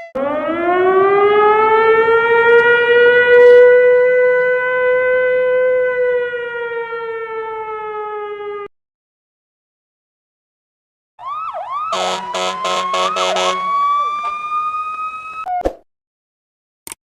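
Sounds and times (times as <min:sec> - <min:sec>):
emergency vehicle siren: 0:00.0 - 0:08.7, 0:11.2 - 0:15.6
horn blasts: 0:03.3 - 0:03.8, 0:11.9 - 0:13.7.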